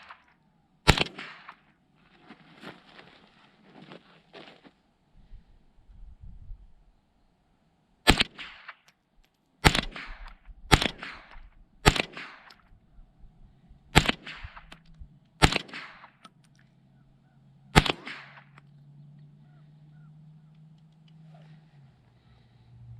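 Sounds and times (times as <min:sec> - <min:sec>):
rifle shots with echo: 0:00.0 - 0:01.7, 0:08.0 - 0:08.9, 0:09.6 - 0:12.7, 0:13.9 - 0:14.8, 0:15.4 - 0:16.2, 0:17.7 - 0:18.6.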